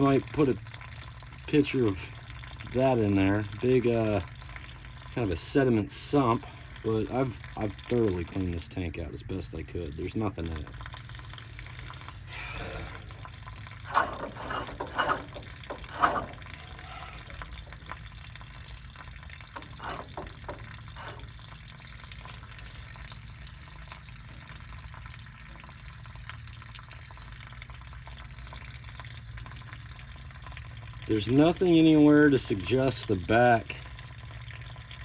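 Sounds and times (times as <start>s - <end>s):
running water: 0.0s - 27.4s, 28.0s - 35.0s
short knocks: 19.5s - 21.3s.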